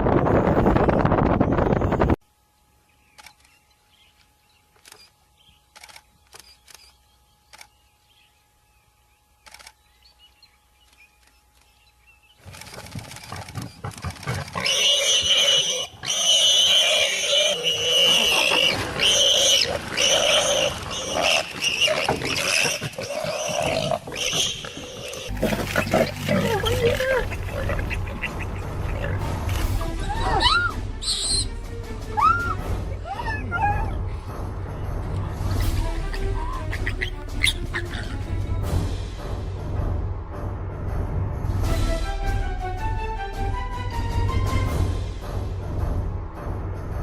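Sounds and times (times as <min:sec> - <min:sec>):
lions roaring: 0:14.1 - 0:29.7.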